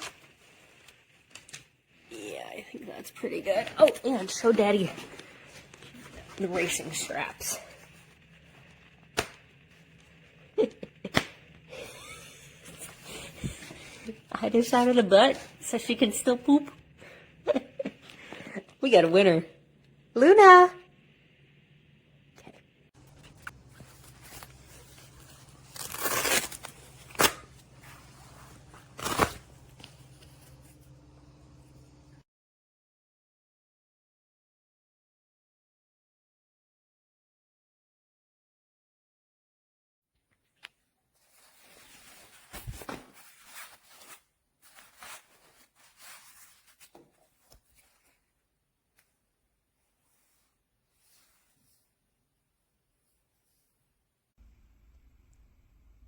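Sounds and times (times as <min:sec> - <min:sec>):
rustling and scuffing: 0:23.2 - 0:30.9, 0:41.2 - 0:48.2
velcro tearing apart: 0:24.0 - 0:28.2, 0:28.8 - 0:29.8.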